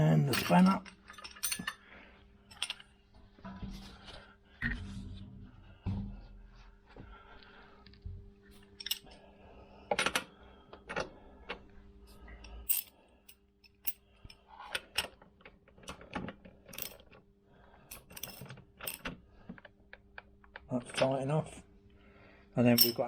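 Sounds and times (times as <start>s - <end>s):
faint steady hum: 0.0s - 16.0s, 16.7s - 23.0s
metal hand tools clinking: 0.3s - 1.8s, 22.7s - 23.0s.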